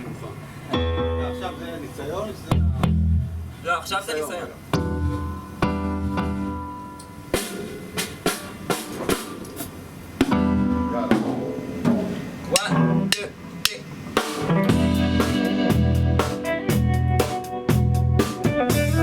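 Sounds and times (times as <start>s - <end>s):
band playing sustained chords: 0.7s - 3.6s, 10.3s - 11.8s, 14.4s - 19.0s
snare and bass drum hits: 7.4s - 9.4s, 14.2s - 19.0s.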